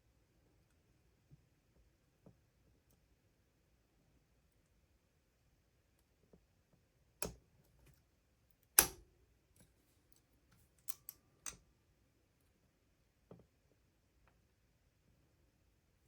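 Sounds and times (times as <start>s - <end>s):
lock picks clicking in padlock: 8.7s - 9.0s, 10.8s - 11.6s.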